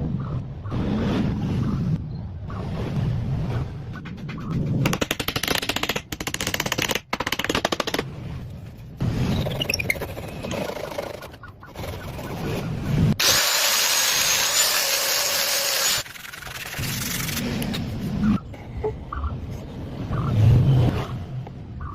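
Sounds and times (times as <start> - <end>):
power tool whirring: 13.2 - 17.4.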